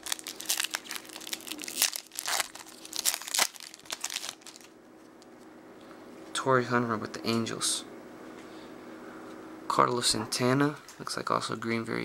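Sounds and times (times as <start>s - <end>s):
trading cards rustling: 0.0s - 4.7s.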